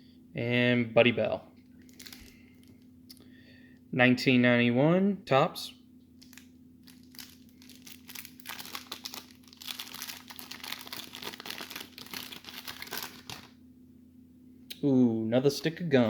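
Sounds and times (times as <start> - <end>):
wax paper wrapper crinkling: 1.8 - 2.9, 6.2 - 13.6.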